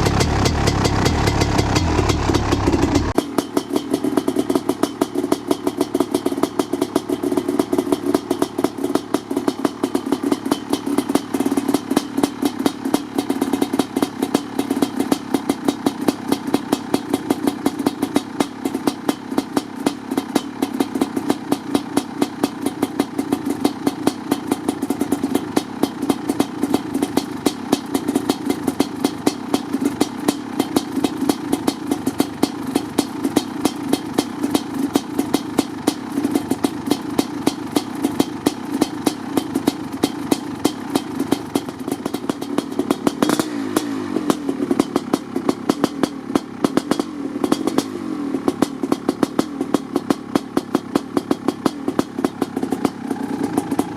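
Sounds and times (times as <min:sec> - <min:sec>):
two-stroke engine popping: 0:00.0 - 0:53.9.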